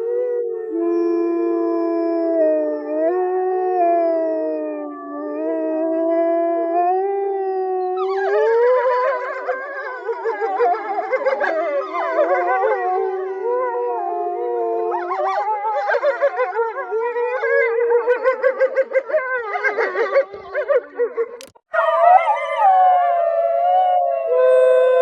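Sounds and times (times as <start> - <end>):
wolves howling: 0.0 - 25.0.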